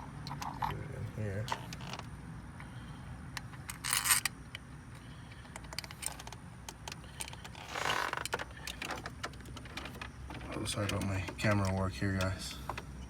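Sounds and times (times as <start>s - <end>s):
metal bolt clicks and clinks: 3.4s - 4.4s.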